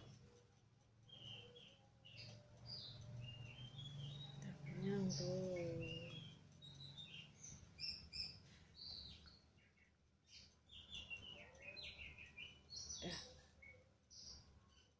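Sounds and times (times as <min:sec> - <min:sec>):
bird chicks chirping: 0:00.0 - 0:14.9.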